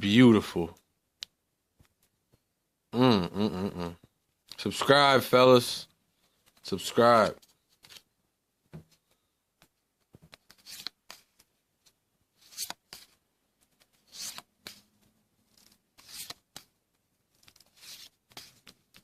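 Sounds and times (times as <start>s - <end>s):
trading cards flipped through: 7.4s - 8.1s, 9.0s - 19.0s.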